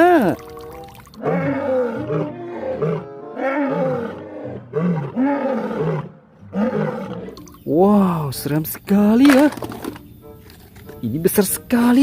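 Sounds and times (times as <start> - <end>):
lion roaring: 1.2 - 7.5.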